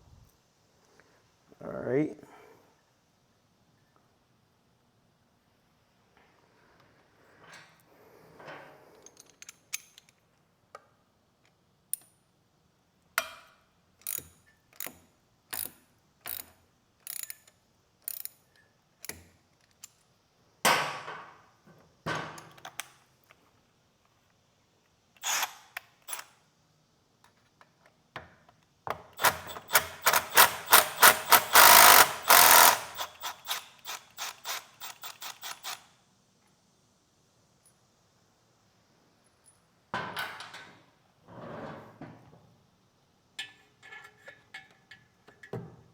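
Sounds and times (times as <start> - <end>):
hand ratchet clicking: 14.0 - 18.4, 29.2 - 35.9.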